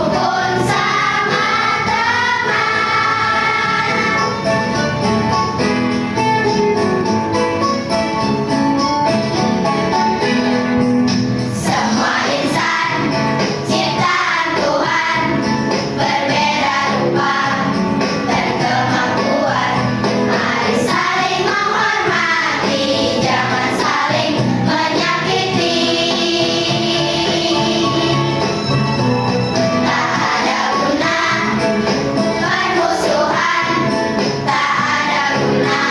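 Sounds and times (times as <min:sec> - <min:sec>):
children's choir singing: 0:00.0 - 0:04.5, 0:11.5 - 0:28.7, 0:29.6 - 0:35.9
musical accompaniment: 0:00.0 - 0:35.9.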